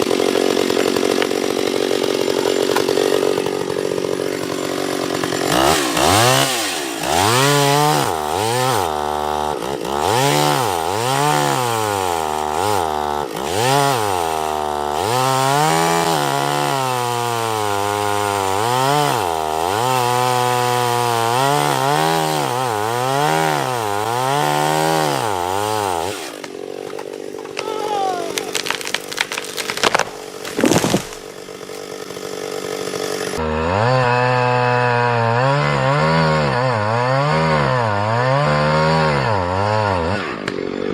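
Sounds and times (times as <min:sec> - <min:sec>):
chainsaw cutting wood: 0:00.0 - 0:40.9
sharp cracks and knocks: 0:00.6 - 0:01.4, 0:02.3 - 0:03.2, 0:26.3 - 0:27.7, 0:28.3 - 0:31.9.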